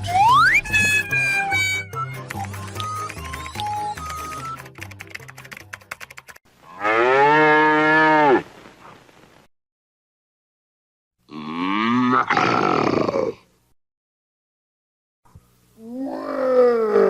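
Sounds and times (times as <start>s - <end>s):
cow mooing: 6.6s - 8.4s.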